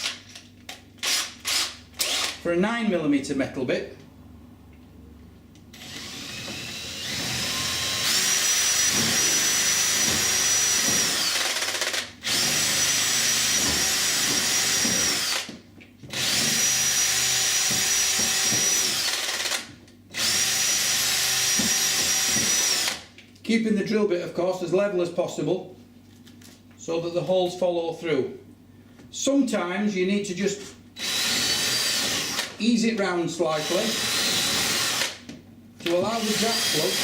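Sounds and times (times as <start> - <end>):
power drill boring holes: 1.0 - 2.4, 5.8 - 15.5, 16.1 - 19.6, 20.2 - 23.0, 31.0 - 32.6, 33.5 - 35.2, 35.9 - 37.0.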